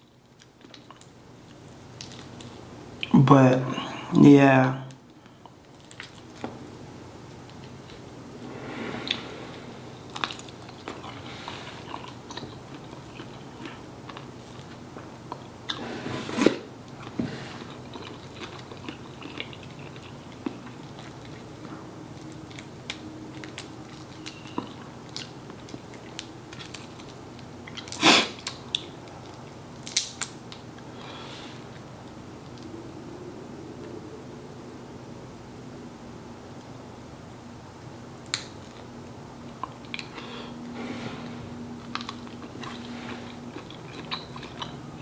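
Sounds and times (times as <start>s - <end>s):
person chewing with wet mouth clicks: 11.8s - 15.8s, 17.8s - 21.4s, 41.8s - 45.0s.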